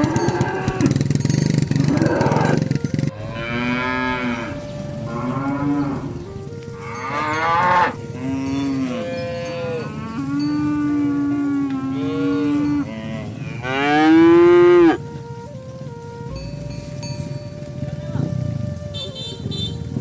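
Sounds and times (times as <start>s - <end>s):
cattle mooing: 0.0s - 1.0s, 1.7s - 15.0s
loud rough sound: 0.8s - 8.0s.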